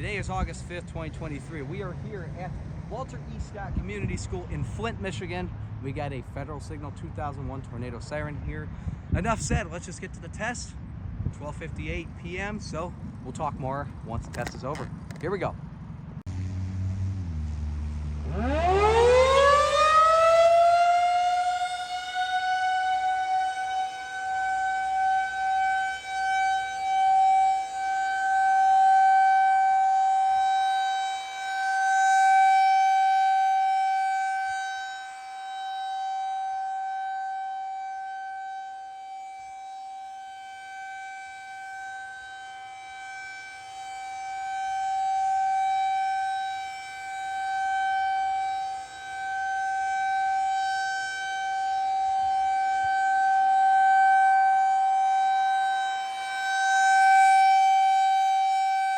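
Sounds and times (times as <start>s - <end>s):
siren steady tone: 16.3s - 58.9s.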